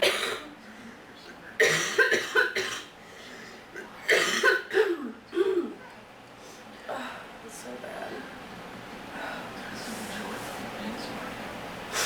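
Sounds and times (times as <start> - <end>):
person coughing: 0.0 - 0.5, 1.6 - 2.9, 4.1 - 5.8.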